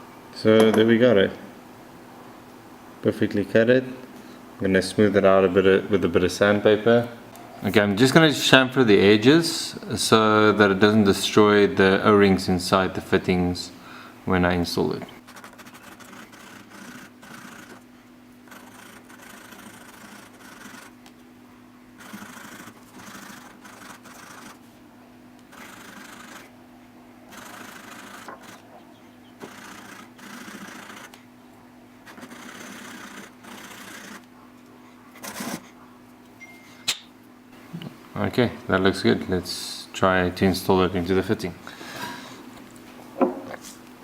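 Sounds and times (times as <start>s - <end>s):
steady low hum: 0.0s - 44.0s
rasping strokes on tube: 15.2s - 21.0s, 22.0s - 24.6s, 25.5s - 26.5s, 27.3s - 28.6s, 29.4s - 31.2s.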